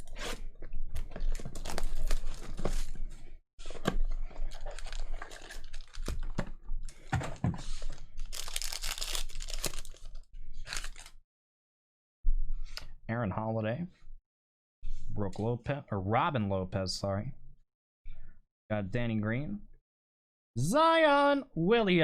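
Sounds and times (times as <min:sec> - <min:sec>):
foil wrapper tearing and crinkling: 0:01.3 - 0:02.9, 0:04.4 - 0:06.4, 0:08.2 - 0:11.1
cards rustling and clicking: 0:08.4 - 0:10.1.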